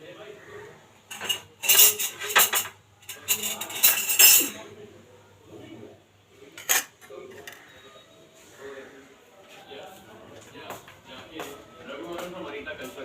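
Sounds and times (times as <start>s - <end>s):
metal utensils clattering on dishes: 1.1s - 4.6s, 6.6s - 7.7s.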